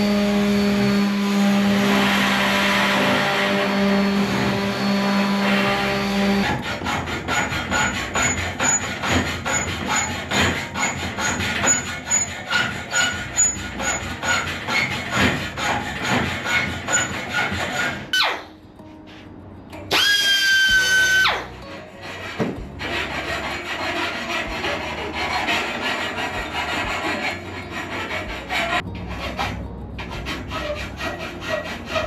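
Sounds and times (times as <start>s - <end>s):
power tool whine: 0.0s - 18.2s, 19.9s - 21.6s
hand saw strokes with squeaks: 0.0s - 19.2s, 19.9s - 32.0s.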